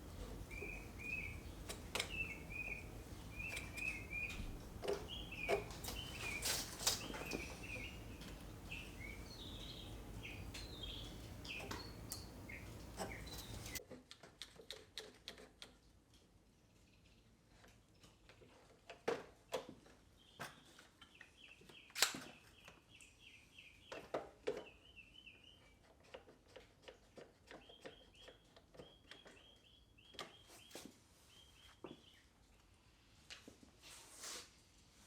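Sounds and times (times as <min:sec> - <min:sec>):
light clicks and taps: 0:00.0 - 0:13.8.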